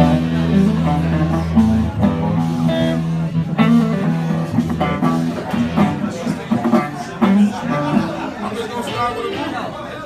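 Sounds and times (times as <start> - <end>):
low bass notes: 0.0 - 8.0
live band music: 0.0 - 8.3
guitar playing: 0.0 - 9.1.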